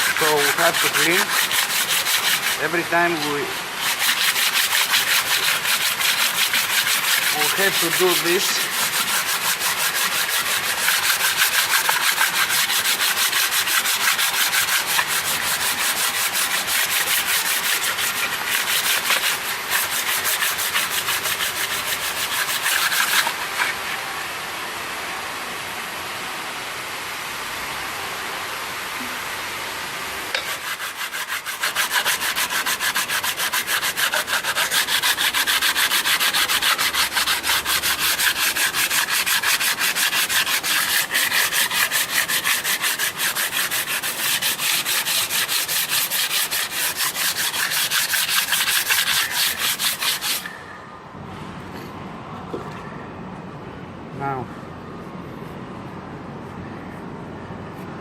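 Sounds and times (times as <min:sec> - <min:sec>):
scrubbing on metal: 0:00.0 - 0:24.0, 0:30.3 - 0:50.6.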